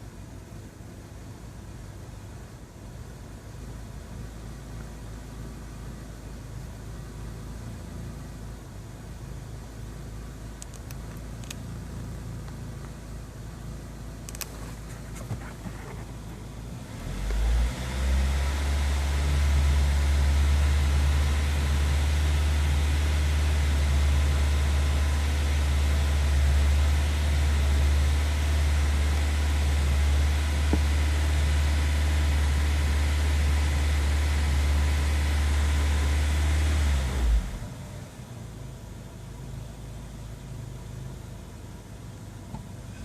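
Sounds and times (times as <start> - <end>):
car engine idling: 1.0 - 43.0.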